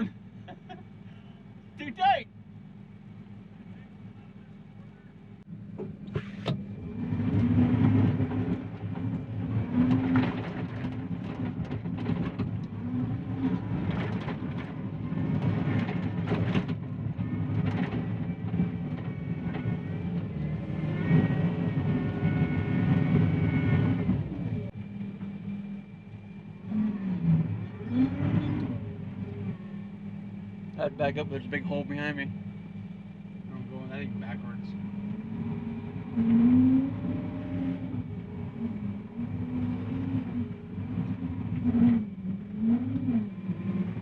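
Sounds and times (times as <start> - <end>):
diesel engine labouring: 0.0 - 44.0
rising whine: 2.9 - 44.0.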